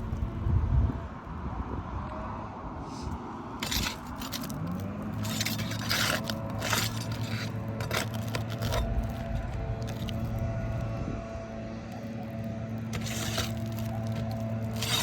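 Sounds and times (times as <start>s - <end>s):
tool scraping under roof shingles: 3.6s - 10.9s, 11.9s - 15.0s
engine humming: 3.6s - 15.0s.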